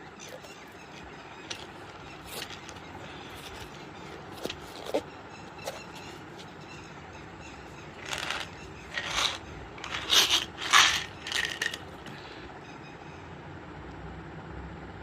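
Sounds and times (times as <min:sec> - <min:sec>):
packaging crinkling and scraping: 0:00.0 - 0:06.6, 0:07.8 - 0:12.3.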